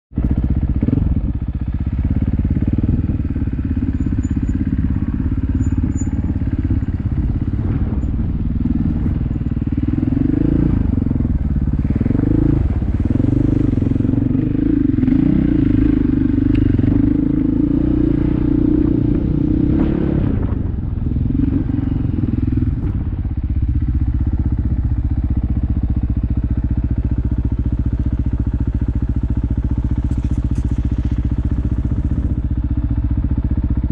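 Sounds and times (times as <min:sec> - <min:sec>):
off-road vehicle engine revving: 0:01.9 - 0:23.2.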